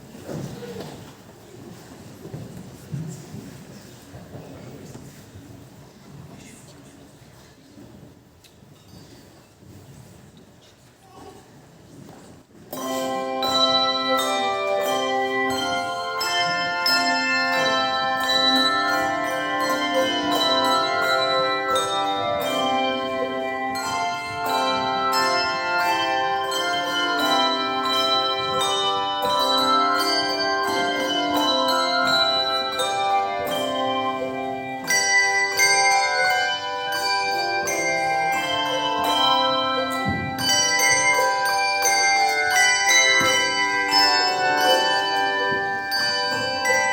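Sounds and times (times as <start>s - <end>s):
tuned bells playing a melody: 12.7s - 46.9s.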